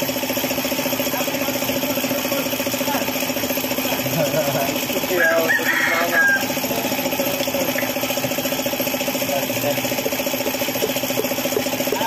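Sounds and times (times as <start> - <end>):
engine idling with rattle: 0.0 - 12.0.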